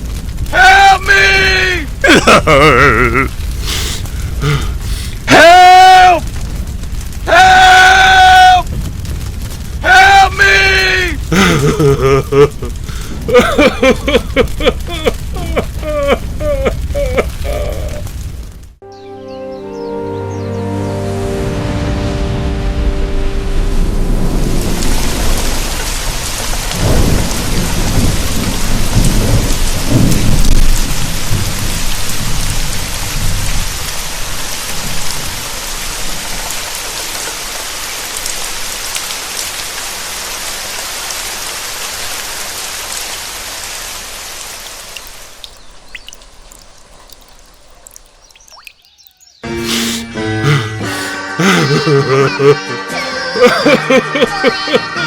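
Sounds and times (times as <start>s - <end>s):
heavy rain: 0.0s - 18.8s, 20.2s - 55.0s
thunder rumbling: 0.0s - 18.8s, 22.2s - 36.7s.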